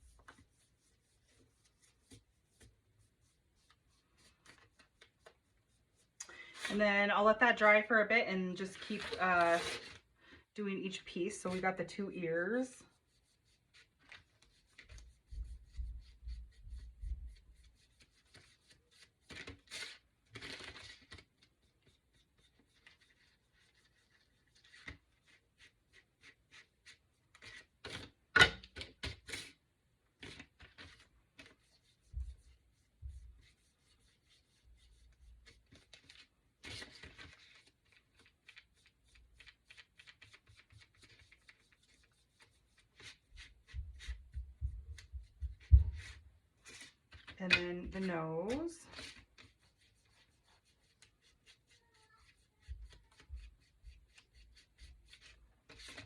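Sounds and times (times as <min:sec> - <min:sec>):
paintbrush scratching on wood: 0:00.0 - 0:06.9, 0:11.4 - 0:19.2, 0:31.4 - 0:36.0, 0:38.5 - 0:47.0, 0:47.8 - 0:56.0.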